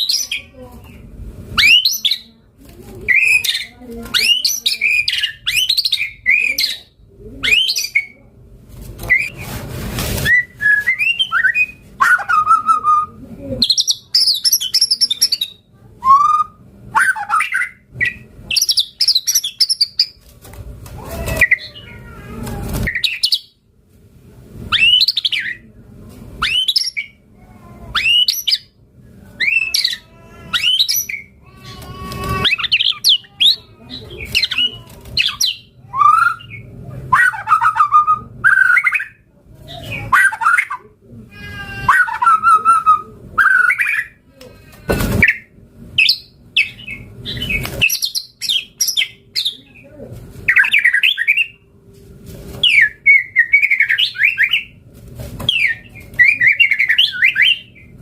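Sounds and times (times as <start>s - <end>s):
bird singing: 3.1s - 8.2s, 29.4s - 31.8s, 45.3s - 49.7s, 52.6s - 54.8s, 55.5s - 58.0s.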